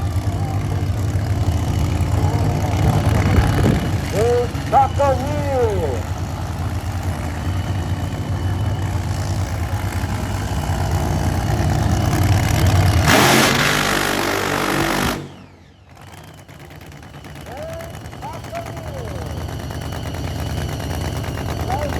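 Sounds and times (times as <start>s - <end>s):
loud rushing roar: 0.0s - 16.1s
car engine running: 0.0s - 21.9s.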